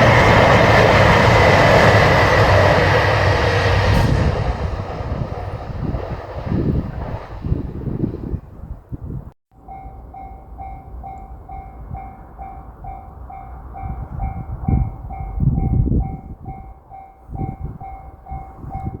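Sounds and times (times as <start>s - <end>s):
railroad crossing bell clanging: 0.0s - 6.0s, 9.5s - 19.0s
low rumbling noise: 0.0s - 9.4s.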